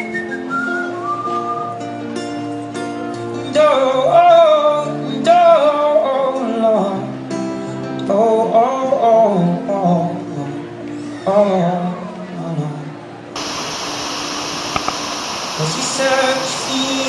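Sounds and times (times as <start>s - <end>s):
acoustic guitar: 0.0s - 13.4s
man singing: 3.4s - 7.2s, 8.0s - 10.7s, 15.6s - 17.0s.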